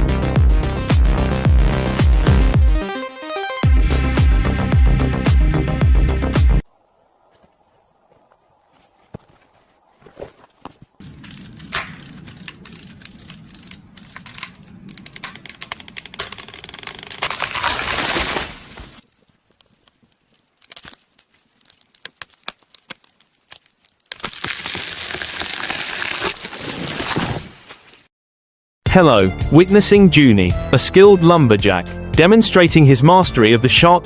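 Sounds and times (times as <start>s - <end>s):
wood cracking and tearing: 10.0s - 28.0s
scattered clicks: 11.1s - 17.2s.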